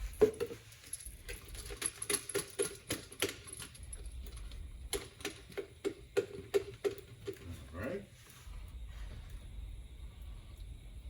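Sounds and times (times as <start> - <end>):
small metal parts clinking: 0.0 - 5.6.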